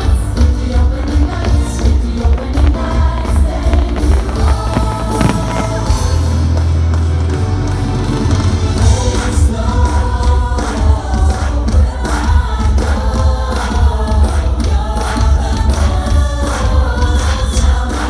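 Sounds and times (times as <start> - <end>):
heavy pulsing bass beat: 0.0 - 7.1
loud music with singing: 0.0 - 18.0.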